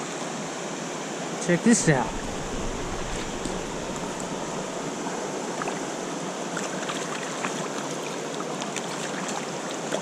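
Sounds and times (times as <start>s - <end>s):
mountain stream flowing: 0.0s - 10.0s
small water splashes: 5.6s - 10.0s.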